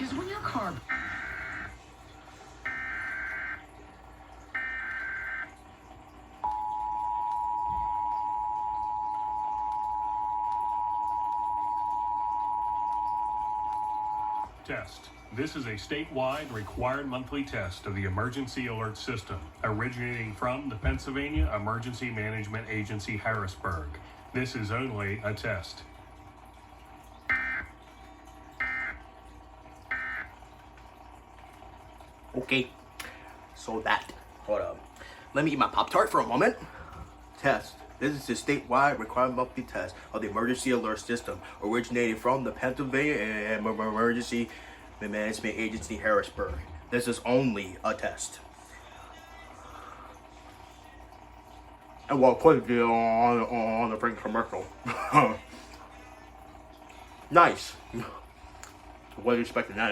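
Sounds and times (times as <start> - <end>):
steady two-tone alert tone: 0.4 - 1.8, 2.6 - 3.7, 4.5 - 5.6, 6.4 - 15.6, 27.3 - 27.8, 28.6 - 29.0, 29.9 - 30.4
digital data bursts warbling screech: 0.8 - 1.8, 2.6 - 3.6.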